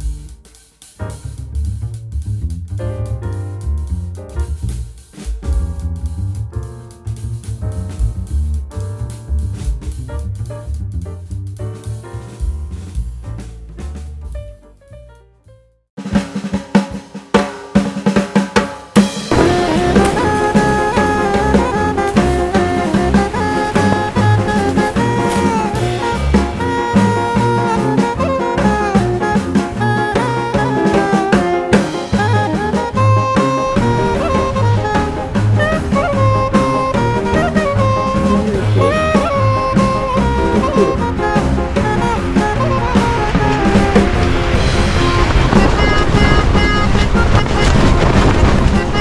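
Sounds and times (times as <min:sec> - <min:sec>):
drum kit fill: 0:00.0 - 0:15.3, 0:16.0 - 0:49.0
swing jazz band playing: 0:00.0 - 0:49.0.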